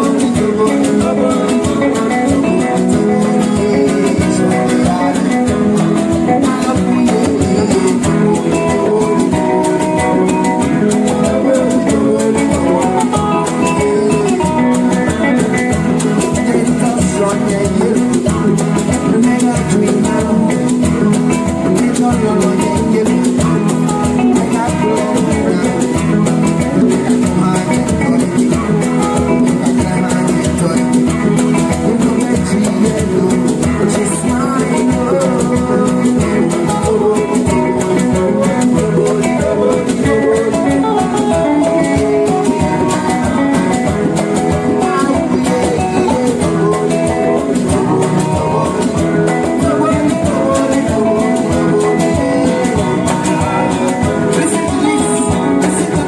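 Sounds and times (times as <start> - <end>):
live band instrumental music: 0.0 - 56.0.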